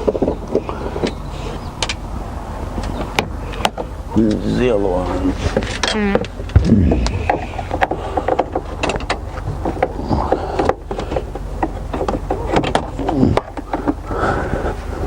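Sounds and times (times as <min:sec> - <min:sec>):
low hum: 0:00.0 - 0:15.0
car dashboard vents rattling: 0:05.4 - 0:14.2.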